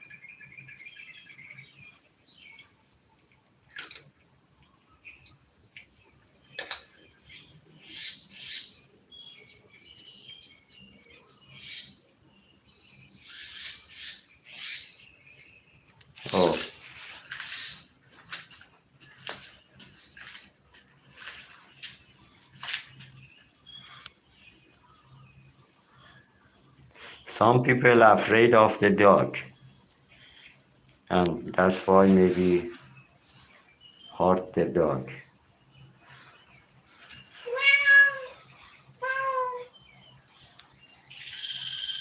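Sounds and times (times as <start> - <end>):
crickets trilling: 0.0 - 42.0
high-pitched insect drone: 7.0 - 42.0
cat meowing: 37.4 - 38.4, 39.0 - 39.7.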